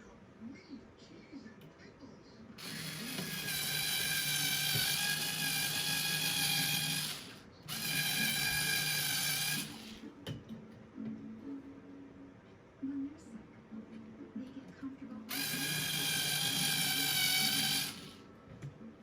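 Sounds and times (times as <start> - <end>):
geared electric motor whining: 2.6 - 10.0, 15.3 - 18.2.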